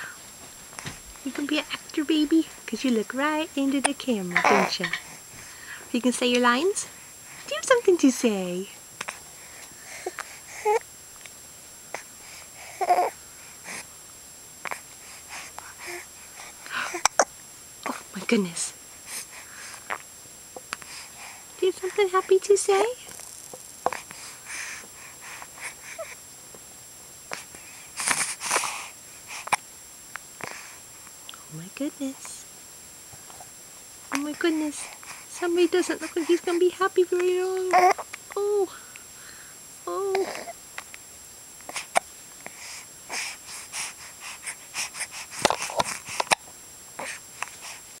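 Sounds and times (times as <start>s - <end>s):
baby breathing: 9.1s - 10.8s, 14.7s - 17.2s, 23.9s - 26.2s, 27.3s - 29.6s, 41.7s - 46.4s, 47.0s - 47.9s.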